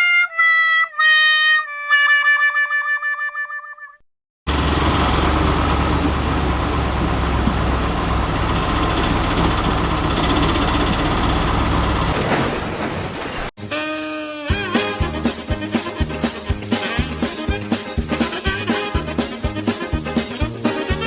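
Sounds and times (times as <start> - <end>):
heavy engine rumbling: 4.5 - 13.5.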